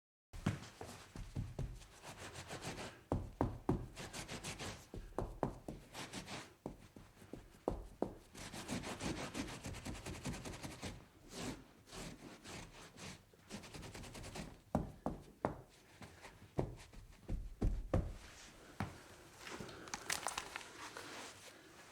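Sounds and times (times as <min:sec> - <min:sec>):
rubbing strokes on a surface: 0:00.7 - 0:17.4.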